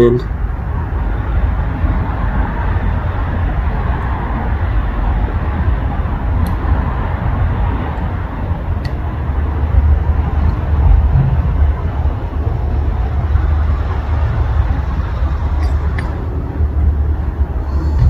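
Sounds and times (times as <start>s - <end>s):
low rumbling noise: 0.0s - 18.0s.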